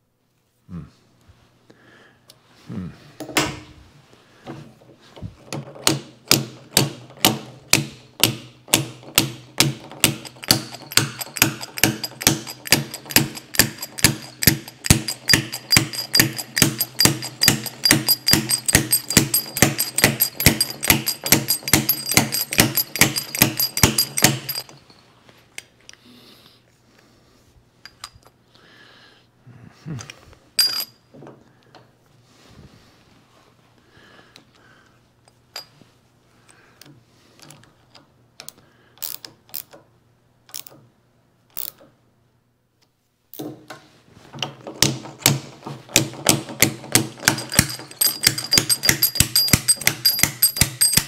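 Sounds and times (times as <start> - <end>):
metallic tool clicks: 10.0 - 24.8, 40.5 - 40.8, 41.5 - 41.8, 47.2 - 51.0.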